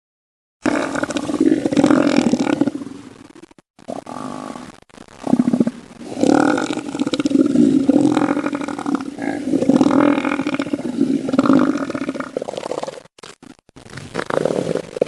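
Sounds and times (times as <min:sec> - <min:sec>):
elephant seal bellowing: 0:05.2 - 0:12.9.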